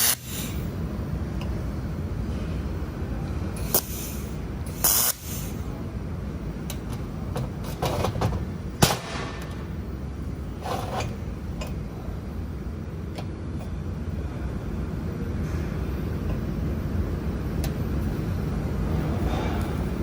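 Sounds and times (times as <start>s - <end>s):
laser welder humming: 0.0s - 0.7s, 3.6s - 5.6s.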